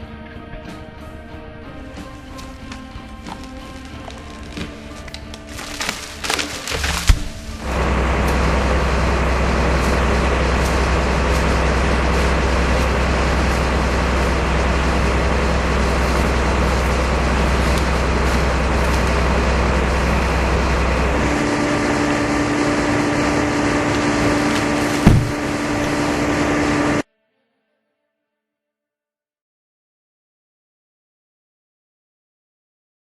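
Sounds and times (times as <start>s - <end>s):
engine humming: 1.7s - 27.1s.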